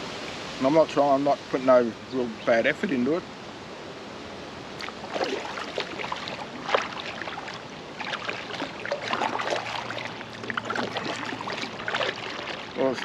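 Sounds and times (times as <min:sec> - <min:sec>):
oars splashing in water: 0:04.7 - 0:13.0
water dripping: 0:04.8 - 0:13.0.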